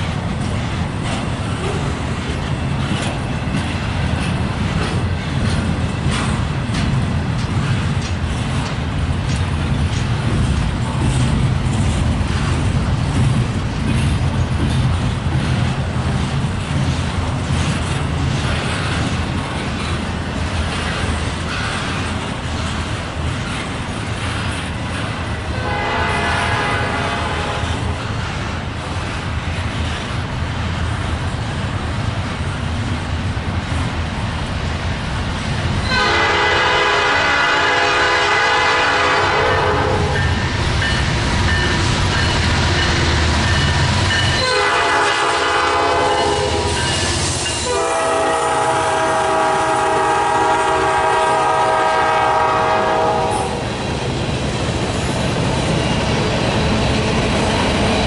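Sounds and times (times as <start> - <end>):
train rumbling and clattering: 0.0 - 58.0
locomotive air horn: 25.5 - 27.9, 35.8 - 40.2, 44.4 - 46.8, 47.6 - 53.6.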